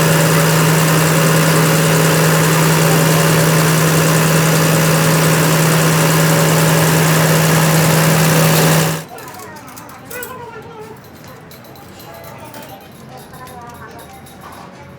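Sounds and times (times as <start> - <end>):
machine humming: 0.0 - 9.1.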